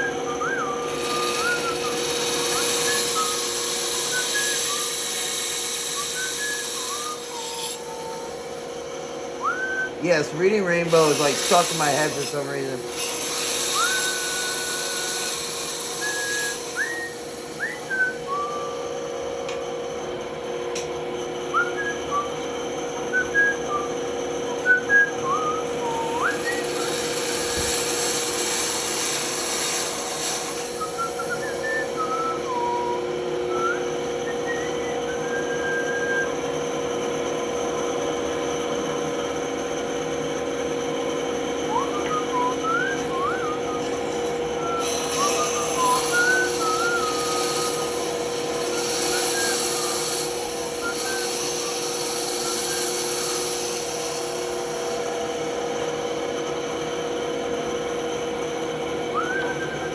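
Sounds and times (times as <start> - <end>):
band saw cutting hiss: 0.0 - 8.2, 9.8 - 17.9, 24.8 - 32.5, 41.3 - 55.6
man whistling a tune: 0.0 - 12.8, 13.6 - 19.6, 21.4 - 29.5, 30.6 - 54.0, 54.7 - 59.9
band saw humming: 0.0 - 59.9.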